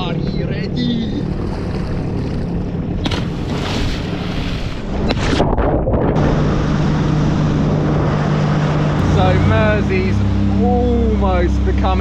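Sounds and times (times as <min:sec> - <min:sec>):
jet ski engine running: 0:00.0 - 0:05.0, 0:06.2 - 0:12.0
wind on microphone: 0:03.4 - 0:10.7.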